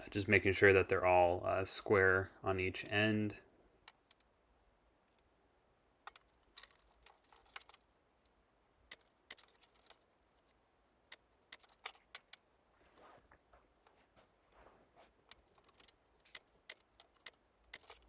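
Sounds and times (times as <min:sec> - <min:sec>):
clicks and taps of wooden parts: 0:03.8 - 0:04.3, 0:06.0 - 0:12.4, 0:13.3 - 0:18.0.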